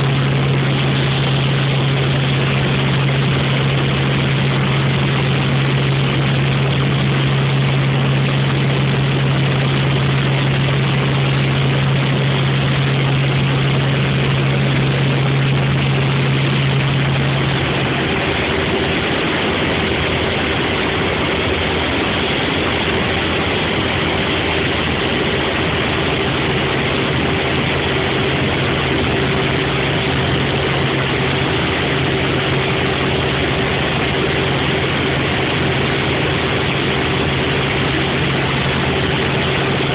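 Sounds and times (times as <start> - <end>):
helicopter engine and rotor drone: 0.0 - 39.9.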